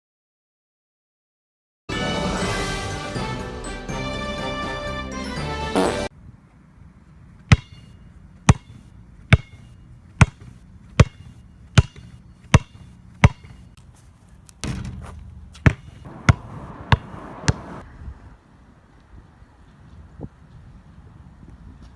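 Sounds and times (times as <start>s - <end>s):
sharp loud thuds: 15.7s - 17.8s
short rush of noise: 16.1s - 18.0s.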